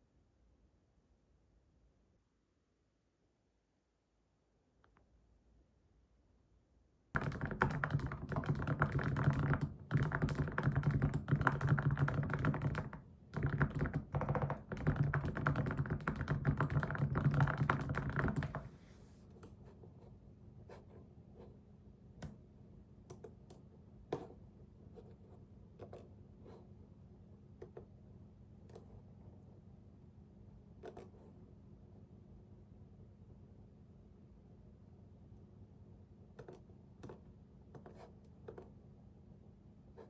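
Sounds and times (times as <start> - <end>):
fast typing on a keyboard: 7.2 - 18.7.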